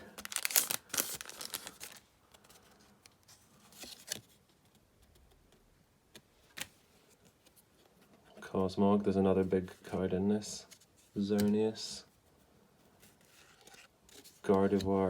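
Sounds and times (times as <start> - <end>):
foil wrapper crinkling: 0.0 - 2.0.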